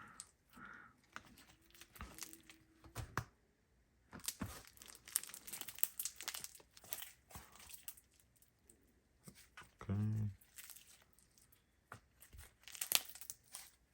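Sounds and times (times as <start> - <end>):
crunchy slime crackling: 1.1 - 2.7, 4.2 - 8.6, 10.1 - 13.9.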